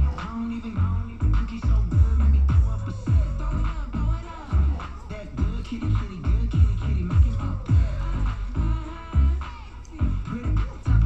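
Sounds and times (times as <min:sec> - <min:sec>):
hip hop music with heavy bass: 0:00.0 - 0:11.0.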